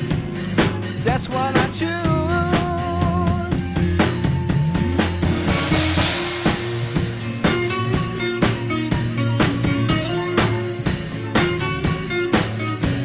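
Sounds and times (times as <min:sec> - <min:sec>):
drum kit steady beat: 0:00.0 - 0:13.0
electric bass: 0:00.0 - 0:13.0
wavering melody line: 0:00.0 - 0:13.0
cymbal swell: 0:03.0 - 0:13.0.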